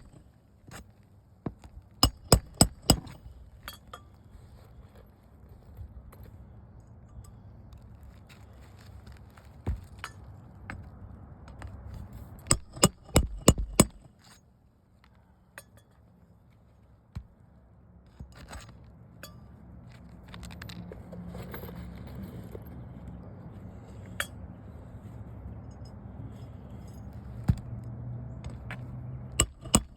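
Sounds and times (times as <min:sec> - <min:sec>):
nail driver hammering roofing nails: 0:02.0 - 0:03.2, 0:12.5 - 0:14.1, 0:29.4 - 0:29.9.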